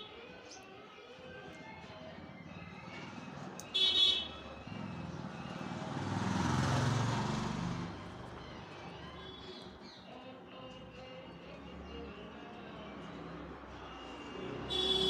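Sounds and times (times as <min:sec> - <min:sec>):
road vehicle passing by: 0:01.3 - 0:09.8, 0:11.4 - 0:15.0.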